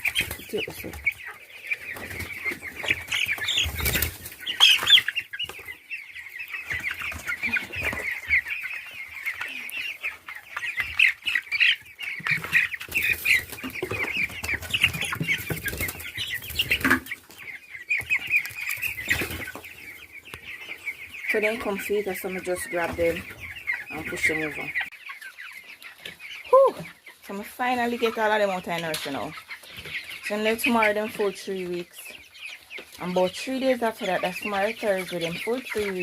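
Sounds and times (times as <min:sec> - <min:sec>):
chicks peeping: 0:00.0 - 0:36.0
wing flapping and scuffling: 0:01.9 - 0:05.8.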